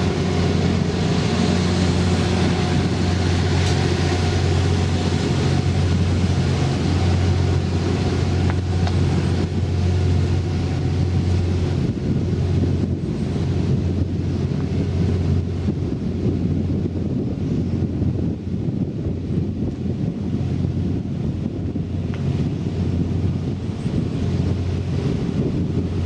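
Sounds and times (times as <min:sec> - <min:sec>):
diesel engine idling: 0:00.0 - 0:15.9.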